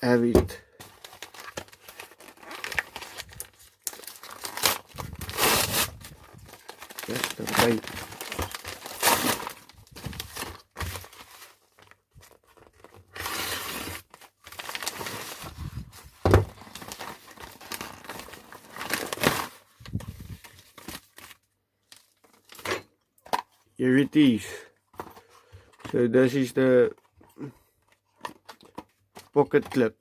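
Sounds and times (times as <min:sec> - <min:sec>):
packaging crinkling: 0:00.8 - 0:22.6
packing tape ripping: 0:01.2 - 0:11.1.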